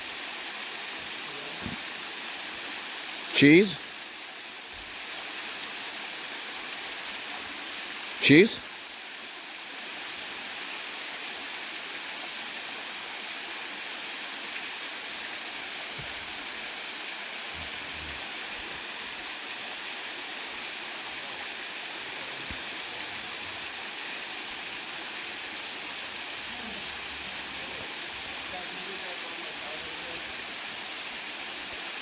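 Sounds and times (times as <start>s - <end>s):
water pouring down a waterfall: 0.0s - 32.0s.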